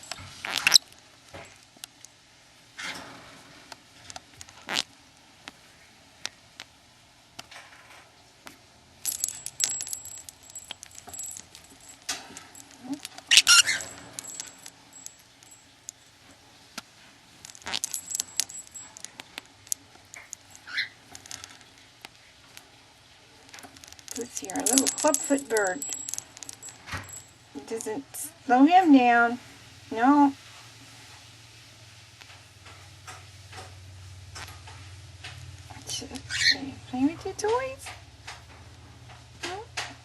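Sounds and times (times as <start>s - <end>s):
metal cage toys jingling: 0.0s - 0.8s, 9.0s - 16.2s, 17.4s - 21.6s, 23.6s - 28.3s
thin bell-like ring: 24.2s - 27.9s.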